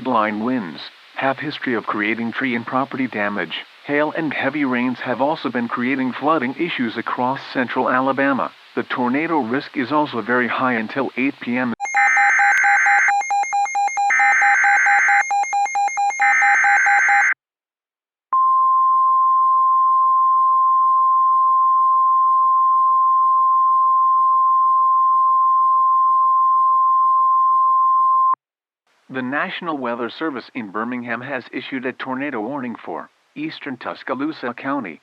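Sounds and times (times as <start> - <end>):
steady alarm tone: 11.8 - 17.4.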